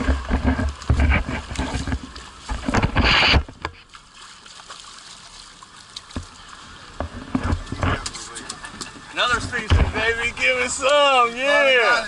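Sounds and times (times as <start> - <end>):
water sloshing against boat: 0.0 - 12.0
knocks on boat: 9.3 - 10.3.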